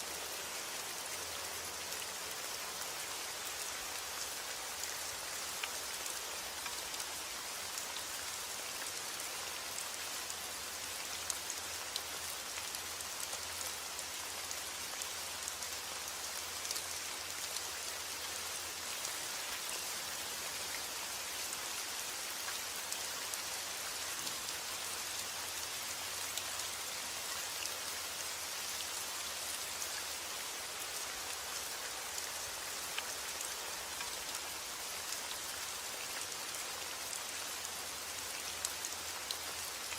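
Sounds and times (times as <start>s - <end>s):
rain pattering: 0.1s - 39.9s.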